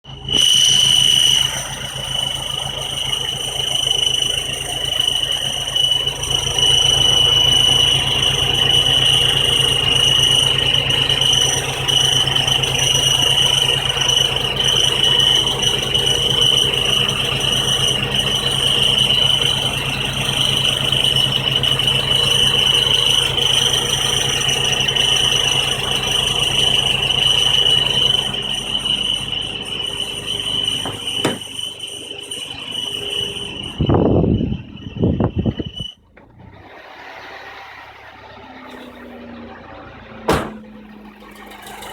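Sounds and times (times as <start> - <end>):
engine low hum: 0.0 - 41.9
high-pitched metal squeal: 0.1 - 41.9.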